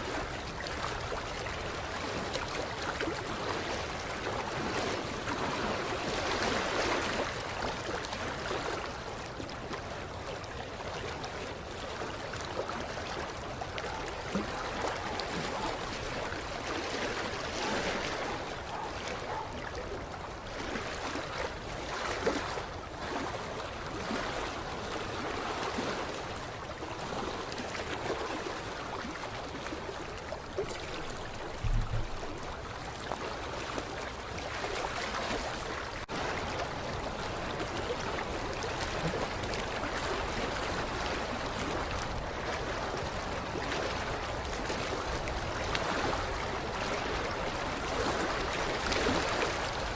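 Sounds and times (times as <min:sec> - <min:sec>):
water lapping against shoreline: 0:00.0 - 0:49.9
low thump: 0:31.6 - 0:32.2.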